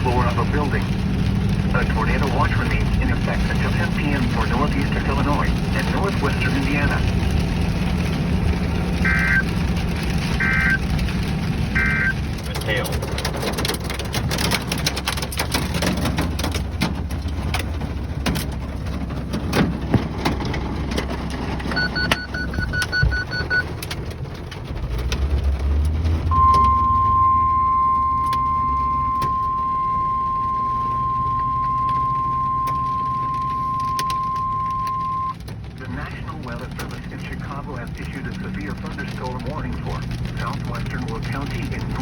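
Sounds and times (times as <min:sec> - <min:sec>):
car cabin road noise: 0:00.0 - 0:42.0
weather radio alarm tone: 0:09.0 - 0:09.6, 0:10.3 - 0:10.9, 0:11.7 - 0:12.2, 0:21.7 - 0:23.6, 0:26.3 - 0:35.4
short beeps: 0:11.8 - 0:12.2, 0:21.8 - 0:23.6, 0:26.3 - 0:35.4.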